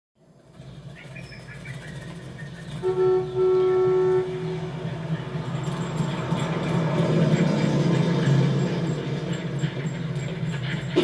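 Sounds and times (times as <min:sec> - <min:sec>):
city traffic rumble: 0:00.2 - 0:11.0
car horn: 0:02.8 - 0:04.8.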